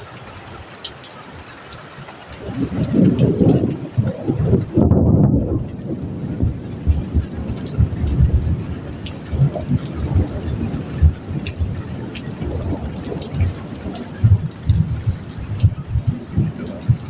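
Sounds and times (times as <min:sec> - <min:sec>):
heavy rain falling and dripping: 0:00.0 - 0:17.0
low rumbling thuds: 0:02.9 - 0:08.6, 0:14.2 - 0:17.0.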